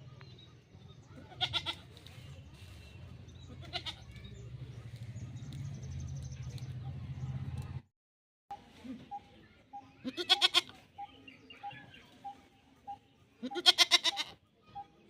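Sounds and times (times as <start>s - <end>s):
goat bleating: 1.2s - 1.9s, 3.4s - 4.0s, 10.1s - 10.8s, 13.4s - 14.4s.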